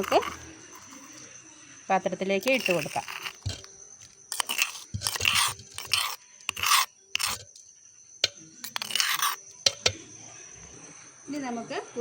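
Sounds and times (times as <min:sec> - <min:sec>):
gritty scraping in stone mortar: 0:00.0 - 0:01.3, 0:02.2 - 0:07.6, 0:08.2 - 0:10.0.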